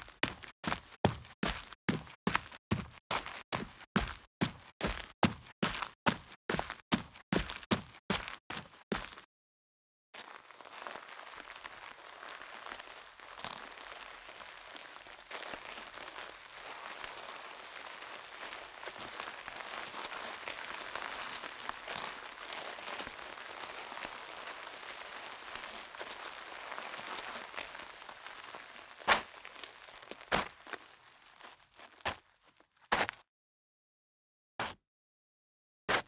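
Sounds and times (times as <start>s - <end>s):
footsteps on gravel: 0.0s - 9.2s, 14.8s - 32.2s.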